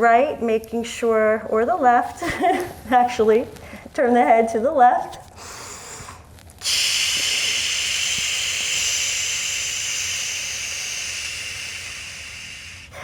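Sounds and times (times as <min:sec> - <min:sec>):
forceful hissing exhale: 0:05.4 - 0:13.0.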